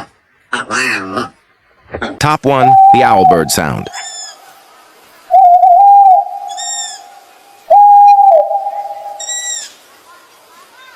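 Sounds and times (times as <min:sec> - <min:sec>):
owl hooting: 0:02.5 - 0:04.4, 0:05.3 - 0:09.7
short high-pitched calls: 0:05.3 - 0:09.7.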